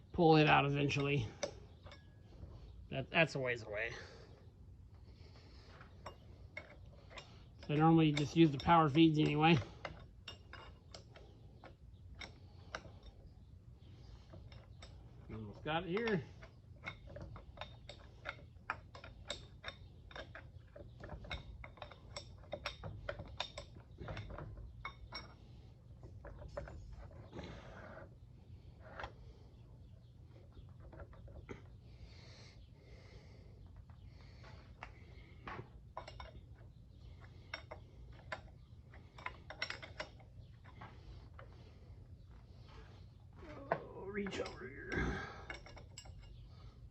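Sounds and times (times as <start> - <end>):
hand tools clinking on metal: 0.3 - 2.2, 6.0 - 13.2, 14.2 - 25.4, 35.9 - 36.7, 37.4 - 41.5, 43.4 - 46.8.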